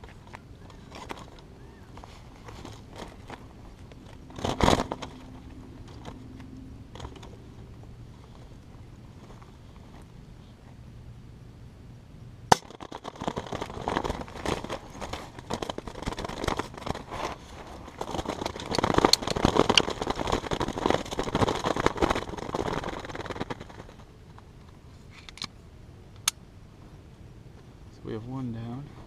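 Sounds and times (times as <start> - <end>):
bird wings flapping in cage: 4.2 - 6.3, 12.6 - 24.1
pellet gun shot: 12.5 - 12.8.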